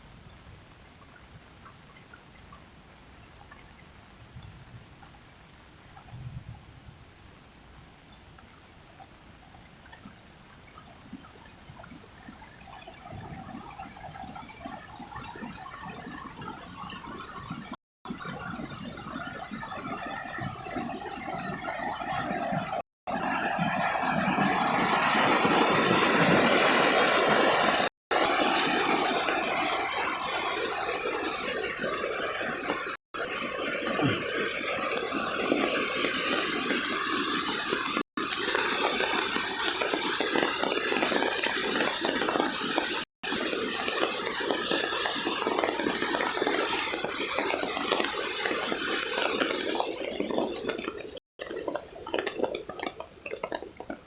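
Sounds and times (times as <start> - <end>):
heavy rain pouring: 19.7 - 53.9.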